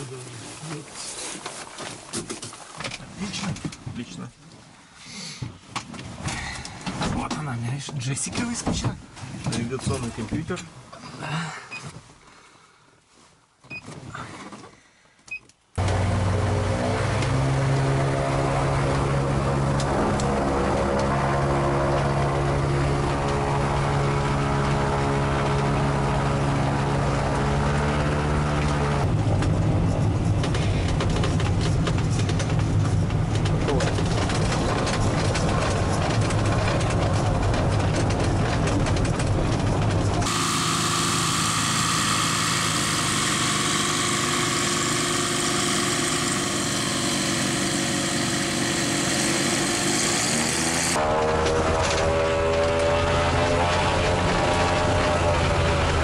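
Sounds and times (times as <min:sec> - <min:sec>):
aircraft engines and propellers droning: 0:15.8 - 0:56.0.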